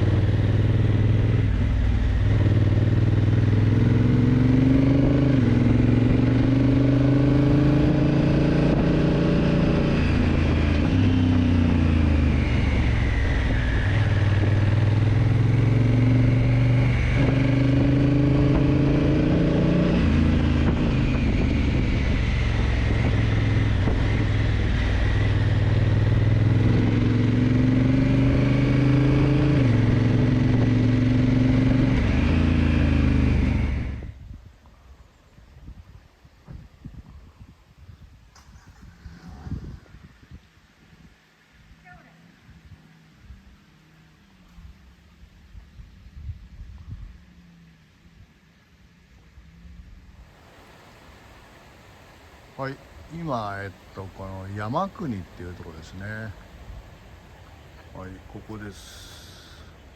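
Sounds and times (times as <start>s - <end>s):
wind noise: 0.0s - 26.7s, 33.4s - 41.2s, 45.4s - 47.3s.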